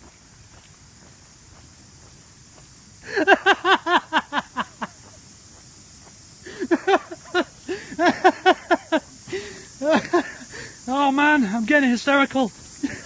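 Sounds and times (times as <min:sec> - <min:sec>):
man laughing hysterically: 0:03.0 - 0:05.0, 0:06.5 - 0:10.7, 0:12.8 - 0:13.0.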